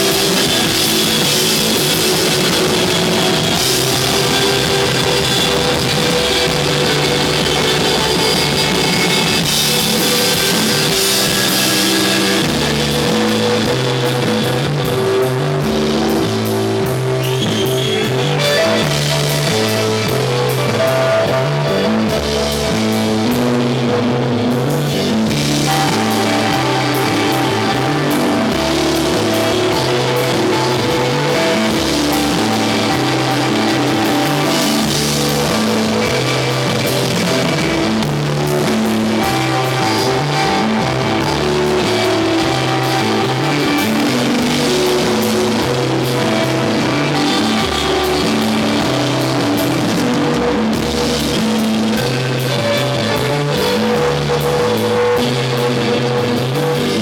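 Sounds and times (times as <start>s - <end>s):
cymbals ringing: 0.0s - 14.5s
bass guitar line: 0.0s - 57.0s
drum kit: 0.0s - 57.0s
electric guitar: 0.0s - 57.0s.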